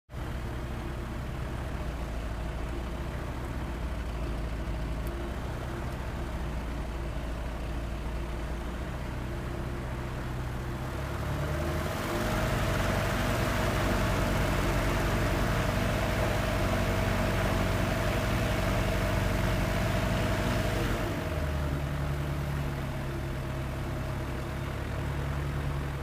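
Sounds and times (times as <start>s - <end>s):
light aircraft engine rough idle: 0.2s - 11.0s, 21.1s - 26.0s.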